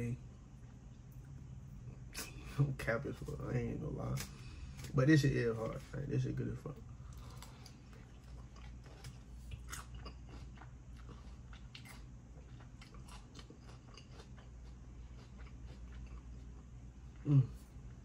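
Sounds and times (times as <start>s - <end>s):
person chewing crunchy food: 7.0s - 18.0s.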